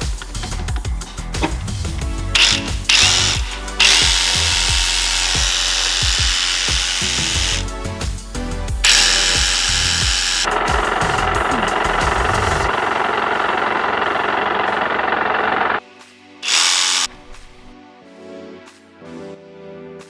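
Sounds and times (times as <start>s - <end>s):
background music with steady beat: 0.0s - 12.8s, 15.8s - 20.0s
reciprocating saw running: 1.0s - 7.8s, 8.8s - 12.8s, 16.4s - 17.8s.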